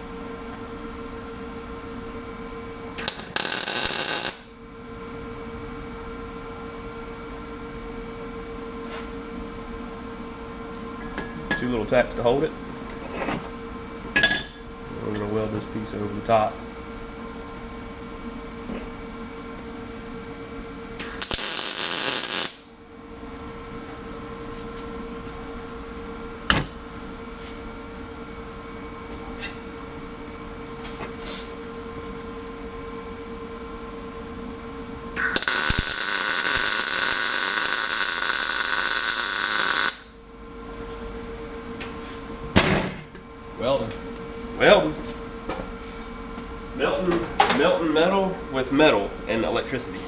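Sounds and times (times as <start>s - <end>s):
steady hum: 0.0s - 50.0s
welding arc crackling: 3.0s - 4.6s, 21.0s - 22.7s, 35.2s - 40.2s.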